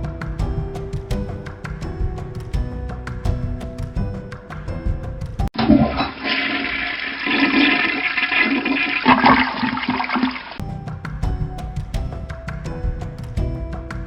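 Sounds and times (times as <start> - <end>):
background music: 0.0 - 5.6, 10.6 - 14.0
toilet flushing: 5.6 - 10.6.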